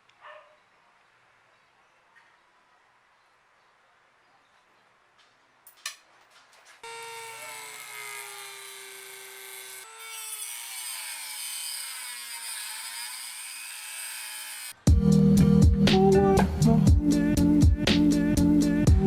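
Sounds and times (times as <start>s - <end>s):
angle grinder whining: 6.8s - 14.8s.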